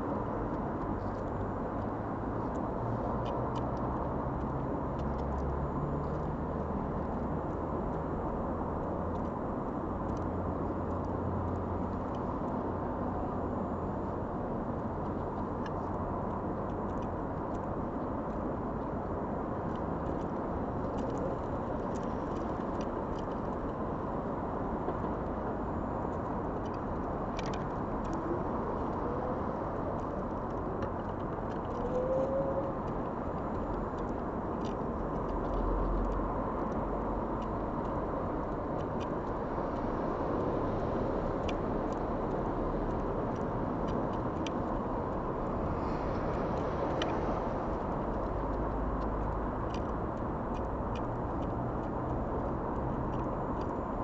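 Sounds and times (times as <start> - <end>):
distant road traffic: 0.0 - 54.0
faint clicks: 26.1 - 53.8.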